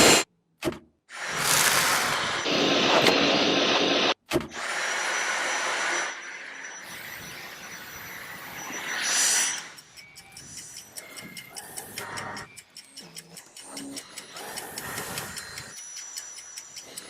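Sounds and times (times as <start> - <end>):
vacuum cleaner motor whining: 1.2 - 9.2.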